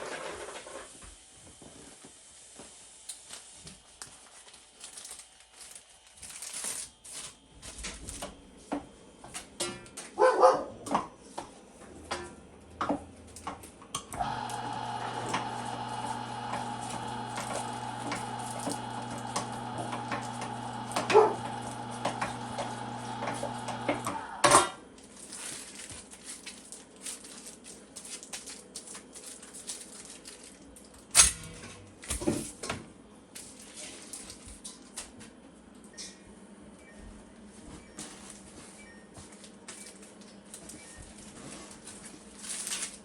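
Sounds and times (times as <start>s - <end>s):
electric meat grinder humming: 14.1s - 24.6s.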